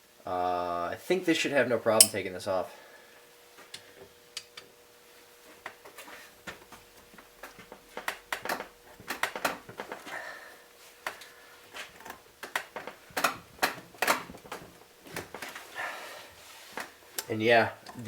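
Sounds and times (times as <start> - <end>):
pliers clicking and knocking on metal: 2.0 - 2.2.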